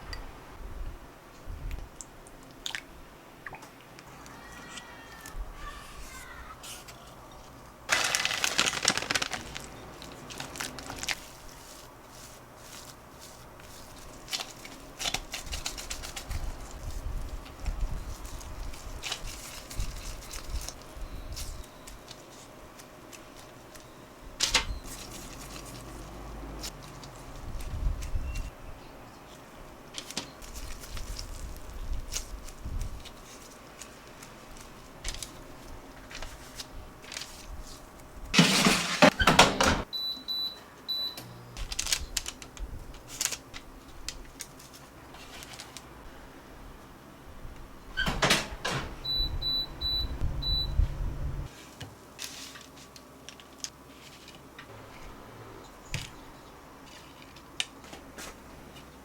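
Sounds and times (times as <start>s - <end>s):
appliance keypad beeps: 39.9s - 41.3s, 48.8s - 50.8s.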